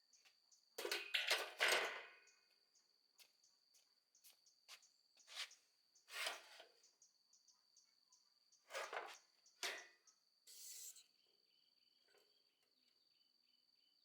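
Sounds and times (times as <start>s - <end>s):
insects trilling: 6.7s - 14.0s.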